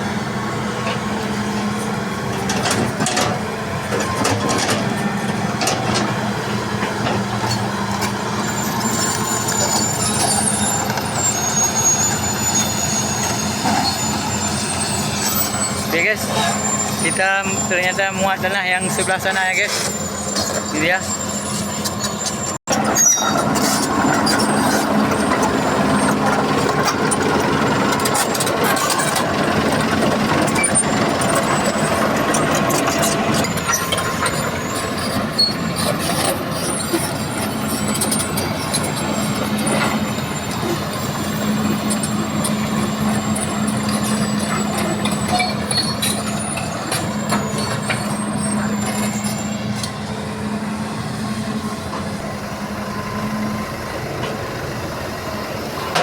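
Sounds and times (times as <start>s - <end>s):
heavy diesel engine under load: 0.0s - 56.0s
metallic clanks and knocks: 2.4s - 6.2s.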